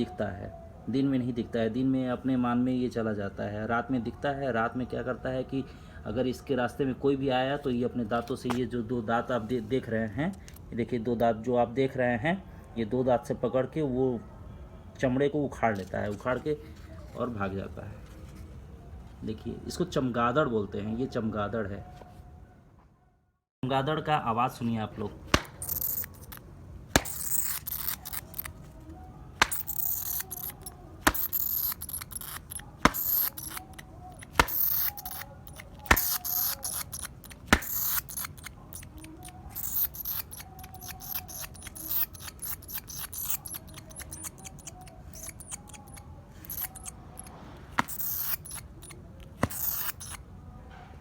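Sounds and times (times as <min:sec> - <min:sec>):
sharp clicks: 0:25.3 - 0:26.4, 0:27.0 - 0:28.5, 0:29.4 - 0:50.2
bat squeaking: 0:25.3 - 0:28.6, 0:29.4 - 0:50.2.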